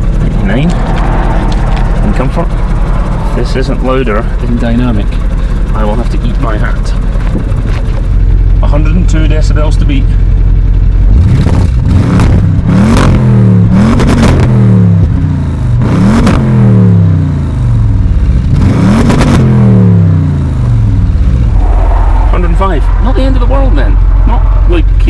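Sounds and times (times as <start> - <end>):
exhaust cracks at rev limiter: 0.0 - 8.2
car engine revving: 0.0 - 25.0.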